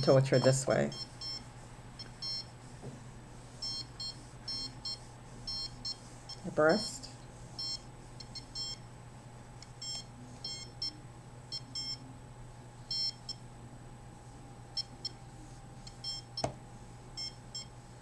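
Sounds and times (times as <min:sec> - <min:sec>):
high-pitched meter beeps: 0:00.0 - 0:01.4, 0:02.0 - 0:02.5, 0:03.6 - 0:06.5, 0:07.6 - 0:08.8, 0:09.8 - 0:12.0, 0:12.9 - 0:13.4, 0:15.9 - 0:16.5, 0:17.2 - 0:17.7
low steady hum: 0:00.0 - 0:18.0.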